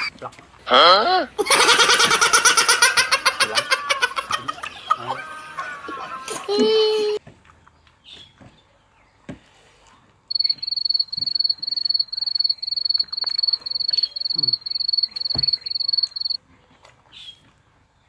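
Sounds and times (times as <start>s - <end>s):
cricket chirping: 10.3s - 16.4s.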